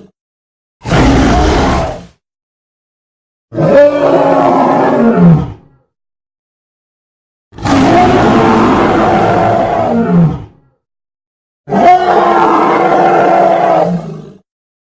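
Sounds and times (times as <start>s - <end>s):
monster roar: 0.8s - 2.1s, 3.5s - 5.6s, 7.6s - 10.5s, 11.7s - 14.4s.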